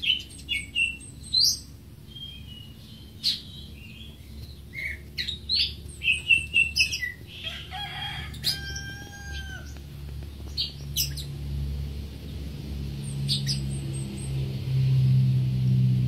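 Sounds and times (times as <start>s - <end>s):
bird singing chirps and trills: 0.0s - 15.0s.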